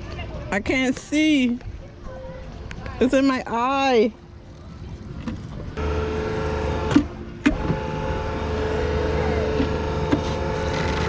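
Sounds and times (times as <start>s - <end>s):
boat motor humming: 4.0s - 11.0s.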